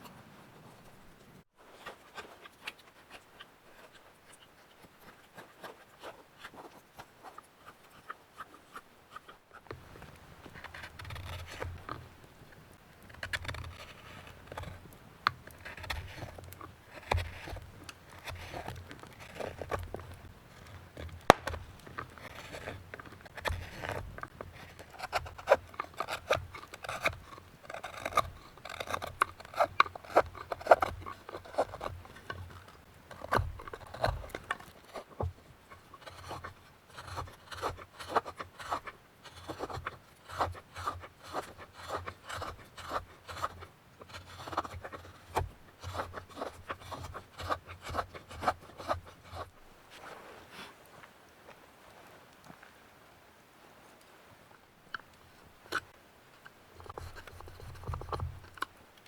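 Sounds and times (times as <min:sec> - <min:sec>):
carving blade scraping wood: 0:09.6 - 0:49.6, 0:55.7 - 0:58.7.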